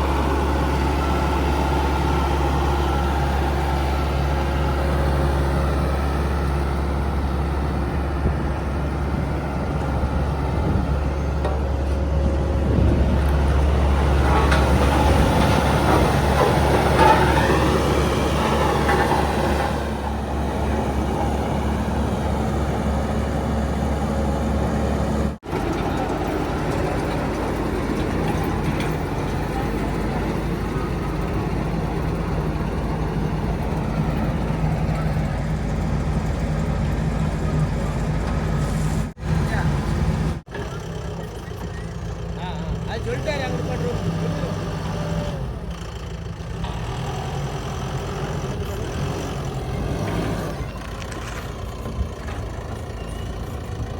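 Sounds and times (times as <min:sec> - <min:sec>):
heavy diesel machinery running: 0:00.0 - 0:53.9.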